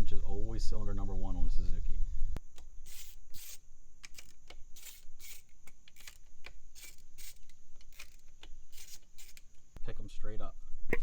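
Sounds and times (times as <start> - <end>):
hands and tools scraping and clicking: 2.5 - 9.7.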